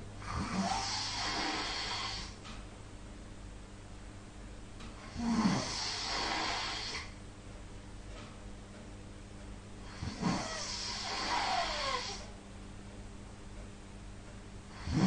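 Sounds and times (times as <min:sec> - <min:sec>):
person snoring: 0:00.2 - 0:02.4, 0:05.0 - 0:07.2, 0:09.8 - 0:12.3, 0:14.7 - 0:15.0.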